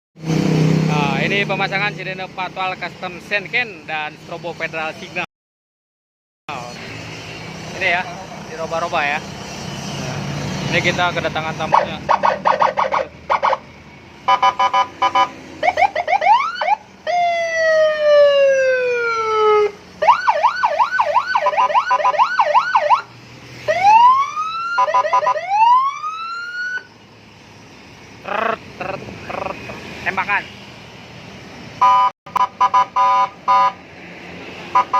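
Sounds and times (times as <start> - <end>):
electronic siren cycling tones: 11.6 - 13.7, 14.3 - 27.0, 31.8 - 33.8.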